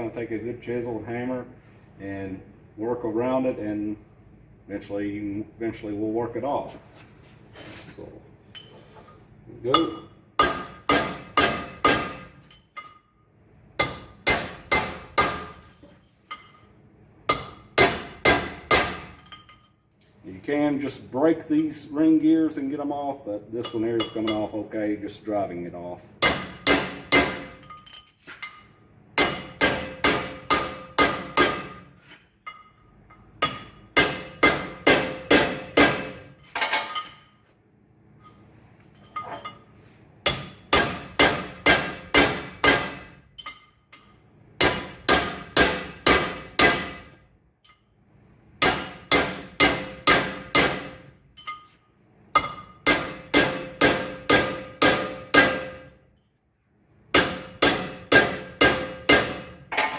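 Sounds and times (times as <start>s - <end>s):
hammer striking chisel on metal: 9.7s - 13.0s, 13.8s - 16.6s, 17.3s - 19.5s, 23.6s - 24.6s, 26.2s - 27.8s, 29.2s - 31.9s, 32.5s - 37.0s, 40.2s - 47.8s, 48.6s - 51.7s, 52.4s - 56.0s, 57.1s - 59.9s.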